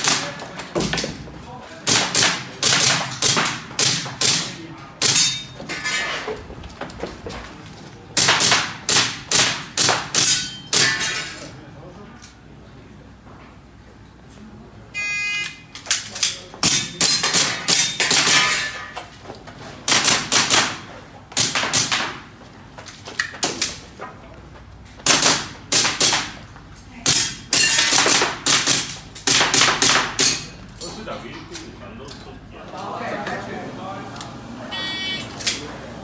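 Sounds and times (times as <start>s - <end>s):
rapid airsoft pistol shots: 0.0s - 0.4s, 1.8s - 5.4s, 8.2s - 10.9s, 19.9s - 20.8s, 21.4s - 22.2s, 25.0s - 26.4s, 27.0s - 30.4s
shot timer beep: 15.0s - 15.6s, 34.7s - 35.3s.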